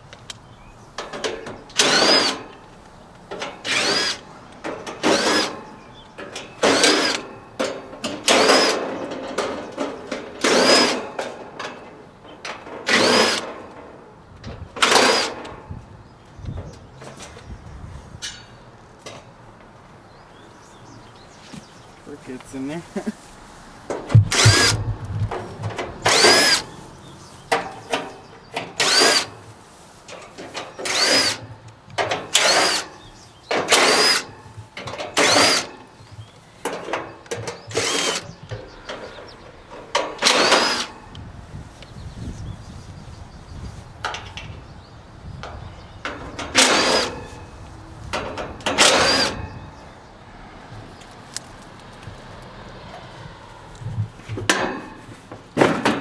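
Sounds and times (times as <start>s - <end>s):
cordless drill whirring: 1.8s - 2.5s, 3.6s - 4.3s, 5.0s - 5.6s, 6.6s - 7.4s, 8.2s - 9.0s, 10.4s - 11.2s, 12.9s - 13.5s, 14.8s - 15.4s, 24.1s - 26.8s, 27.9s - 29.4s, 30.7s - 31.6s, 32.2s - 34.4s, 35.1s - 35.8s, 37.4s - 38.7s, 40.2s - 41.0s, 46.5s - 47.5s, 48.7s - 49.6s.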